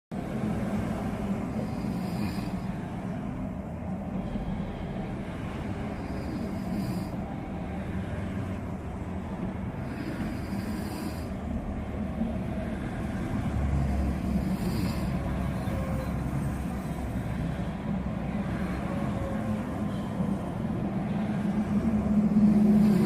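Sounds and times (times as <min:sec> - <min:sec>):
man snoring: 0:01.5 - 0:02.8, 0:05.9 - 0:07.2, 0:09.7 - 0:11.4, 0:13.8 - 0:16.0, 0:22.3 - 0:23.0.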